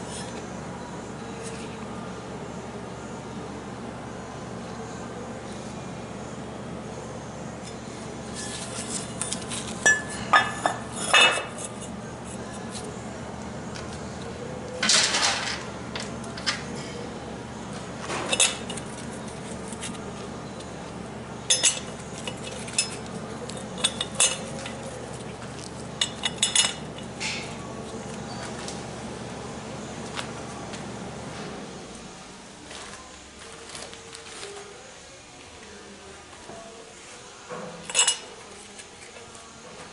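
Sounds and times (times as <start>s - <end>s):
metal tools clinking: 8.4s - 11.9s, 18.1s - 20.0s, 21.5s - 25.3s, 26.0s - 27.5s, 37.9s - 38.3s.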